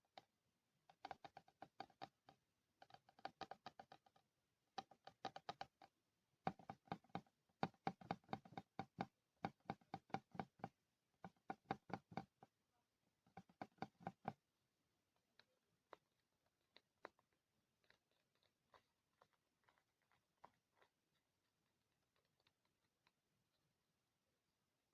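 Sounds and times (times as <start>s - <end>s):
fingers tapping on glass mirror: 6.5s - 10.7s, 11.3s - 12.4s, 13.3s - 14.4s.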